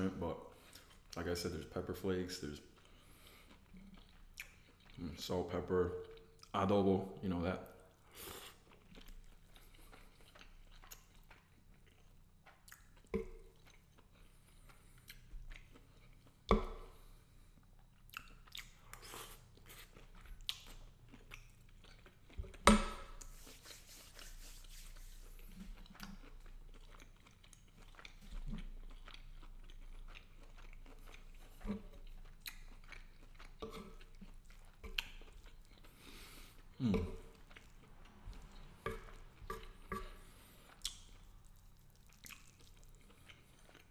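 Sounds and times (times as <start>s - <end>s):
close chewing: 0.6s - 6.5s, 7.9s - 24.4s, 25.0s - 43.9s.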